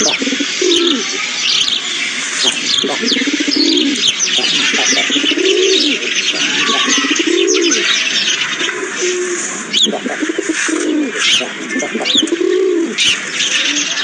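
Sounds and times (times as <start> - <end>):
low cooing: 0.0 - 1.0, 2.7 - 7.9, 8.8 - 13.0
small birds chirping: 0.0 - 14.0.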